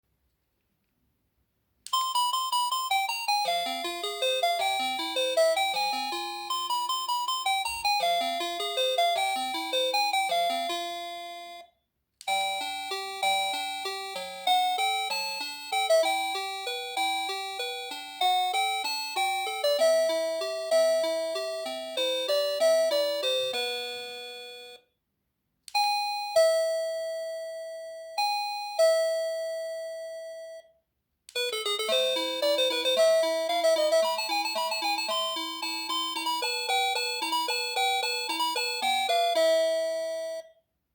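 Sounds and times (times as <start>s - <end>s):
electronic doorbell chime melody: 1.9s - 11.7s, 12.3s - 24.8s, 25.8s - 30.8s, 31.4s - 40.6s
doorbell chime ding-dong: 26.0s - 30.7s.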